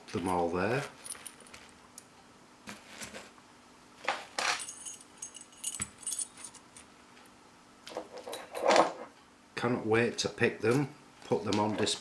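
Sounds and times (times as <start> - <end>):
padlocks and keys clinking: 4.4 - 6.8.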